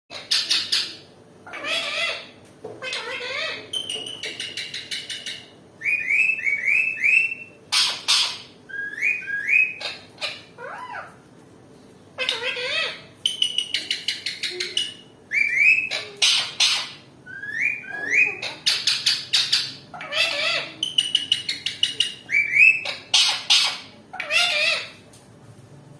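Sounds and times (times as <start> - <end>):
parakeet squawking and chattering: 0.1 - 11.2, 12.2 - 25.1
parakeet harsh screeches: 15.7 - 20.8.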